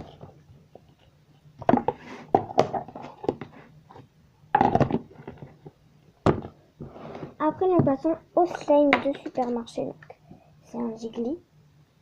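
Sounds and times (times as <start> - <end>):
objects knocking on a desk: 4.5 - 5.4, 6.2 - 6.6.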